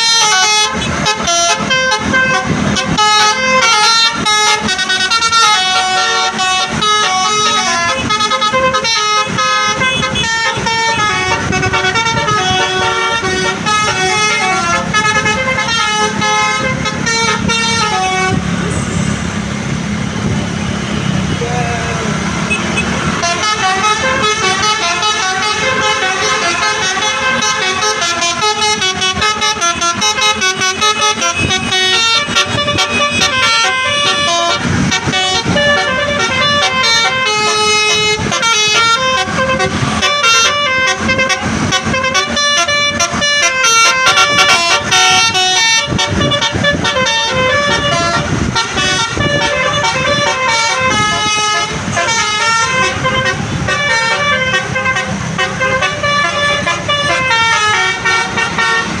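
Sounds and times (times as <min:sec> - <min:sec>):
multi-tone bus air horn tune: 0:00.0 - 0:19.1, 0:22.4 - 0:59.0.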